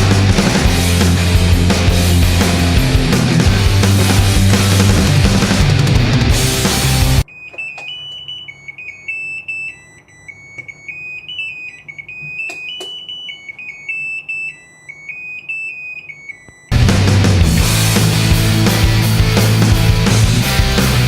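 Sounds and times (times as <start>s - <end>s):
washing machine beeper melody: 6.4s - 16.9s.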